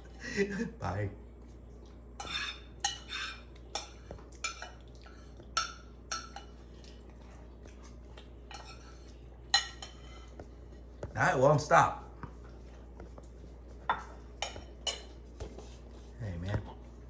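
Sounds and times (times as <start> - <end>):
cutlery clinking on plates: 2.2 - 4.8, 5.6 - 6.6, 8.5 - 10.4, 13.8 - 15.6.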